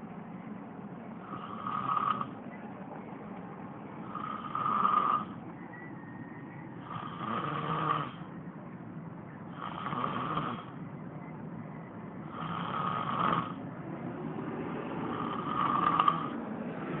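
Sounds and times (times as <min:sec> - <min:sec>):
turtle hissing snores: 0:01.2 - 0:02.4, 0:04.0 - 0:05.4, 0:06.8 - 0:08.3, 0:09.6 - 0:10.7, 0:12.3 - 0:13.6, 0:15.0 - 0:16.4.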